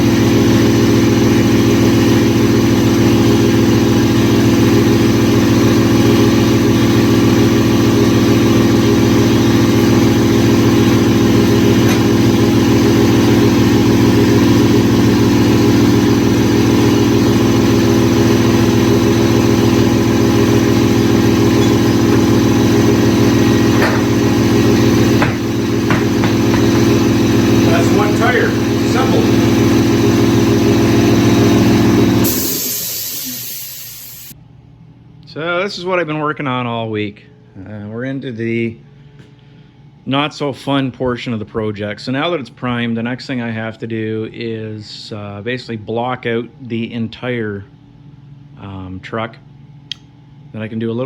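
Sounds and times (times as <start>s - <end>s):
motor humming: 0.0s - 34.3s.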